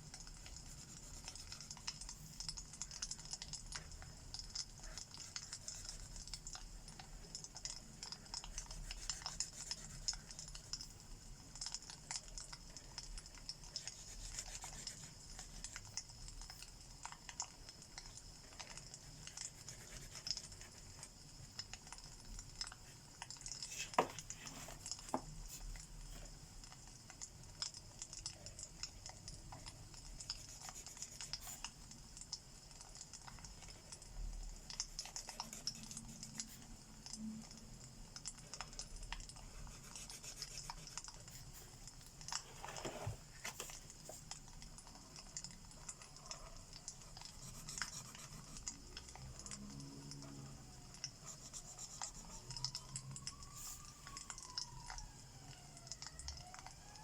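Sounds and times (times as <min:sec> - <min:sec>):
marker nibs scratching paper: 0:04.7 - 0:06.6, 0:07.6 - 0:10.9, 0:13.6 - 0:16.6, 0:18.5 - 0:21.1, 0:23.6 - 0:26.2, 0:30.2 - 0:31.7, 0:39.4 - 0:41.7, 0:47.0 - 0:48.8, 0:51.2 - 0:52.4.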